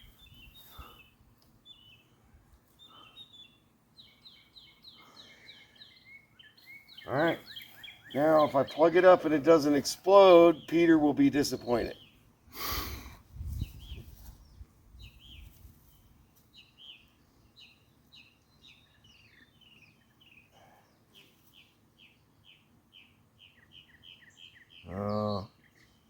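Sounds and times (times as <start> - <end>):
small bird chirping: 0.0 - 8.8, 13.4 - 26.0
rustle of handling noise: 13.4 - 14.5.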